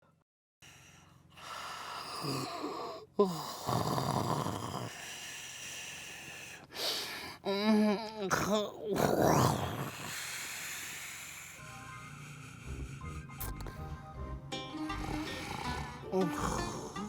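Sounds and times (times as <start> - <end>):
man snoring: 0.6 - 17.0
sharp snort: 8.3 - 14.0, 14.8 - 17.0.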